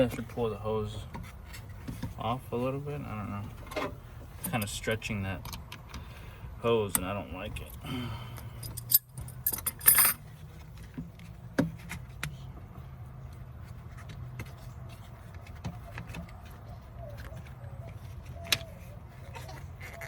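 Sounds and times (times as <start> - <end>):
metal clicks and rattles of tools: 8.4 - 10.2.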